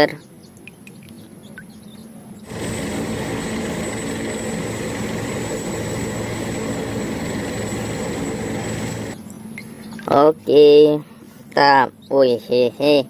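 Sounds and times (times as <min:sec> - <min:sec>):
helicopter rotor chopping: 0:02.4 - 0:09.2
helicopter engine whine: 0:02.4 - 0:09.3.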